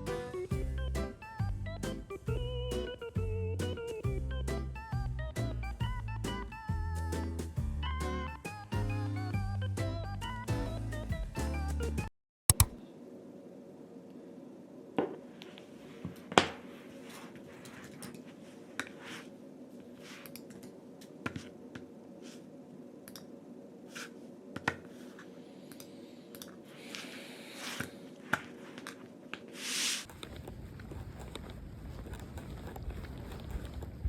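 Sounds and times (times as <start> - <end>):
steady low hum: 12.6 - 29.5.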